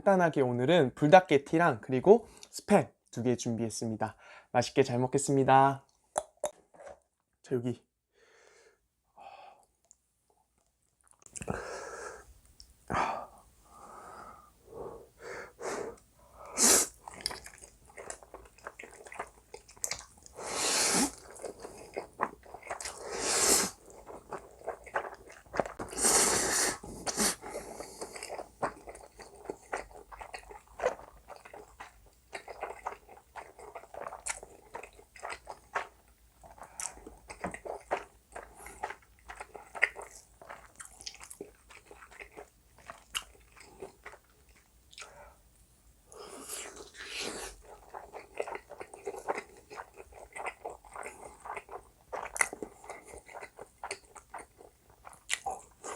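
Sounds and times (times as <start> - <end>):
wet chewing: 15.9 - 45.1, 46.5 - 55.9
slurping noodles: 20.3 - 31.7, 46.2 - 54.1.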